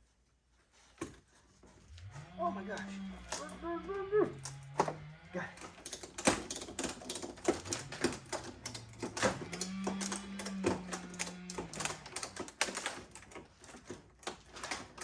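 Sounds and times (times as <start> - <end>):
distant chainsaw: 1.9 - 5.8, 7.6 - 12.2
clicks and knocks of hand work: 2.8 - 15.0.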